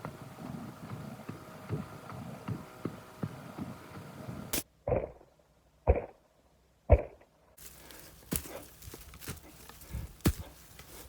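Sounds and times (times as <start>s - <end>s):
low outdoor background: 0.0s - 11.0s
loud dull thumps: 5.9s - 6.2s, 6.9s - 7.2s.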